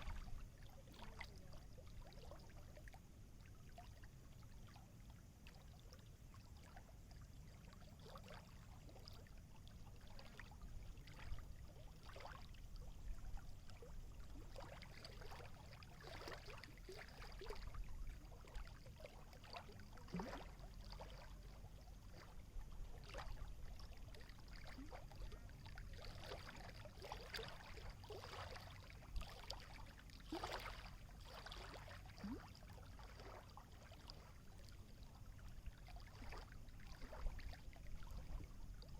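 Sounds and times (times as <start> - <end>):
water waves lapping and splashing: 0.0 - 38.9.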